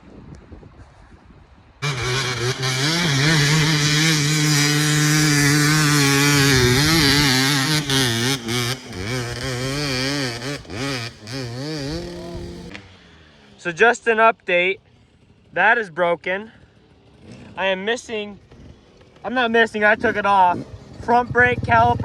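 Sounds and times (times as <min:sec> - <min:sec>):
dirt bike engine revving: 0:01.8 - 0:14.2.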